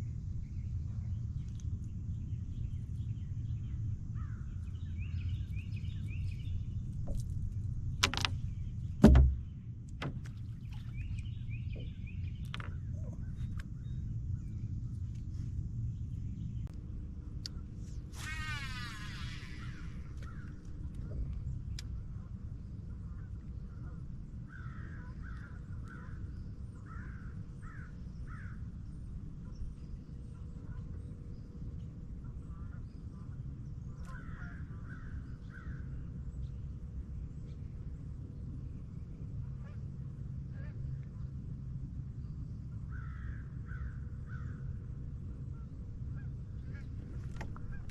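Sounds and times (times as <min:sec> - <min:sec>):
low steady rumble: 0:00.0 - 0:47.9
birds chirping: 0:07.8 - 0:14.8
heavy thump: 0:09.0 - 0:10.3
sharp knocks: 0:09.0 - 0:10.4.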